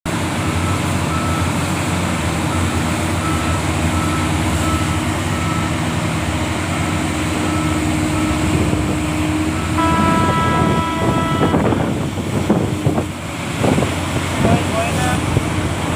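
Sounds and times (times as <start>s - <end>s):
heavy diesel engines running: 0.1s - 15.9s
reversing alarm beeping: 2.5s - 5.8s, 7.4s - 8.6s, 9.4s - 12.0s
horn-like steady tone: 9.6s - 12.1s.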